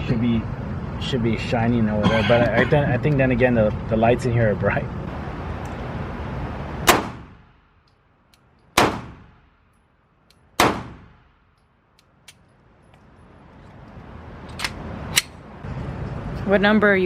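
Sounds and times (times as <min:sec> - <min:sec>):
gunshots ringing indoors: 0:08.8 - 0:09.4.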